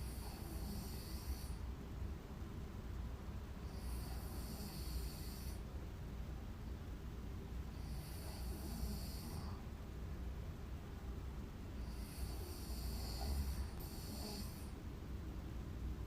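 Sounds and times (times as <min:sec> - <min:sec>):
woman snoring: 0:00.1 - 0:01.6, 0:03.7 - 0:05.6, 0:07.8 - 0:09.6, 0:11.9 - 0:14.7.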